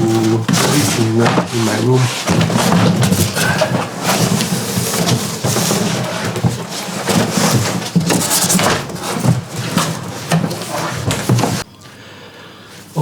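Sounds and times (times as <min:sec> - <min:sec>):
cardboard box rustling and scraping: 0:00.0 - 0:11.6
bumps and crinkles: 0:00.0 - 0:11.7.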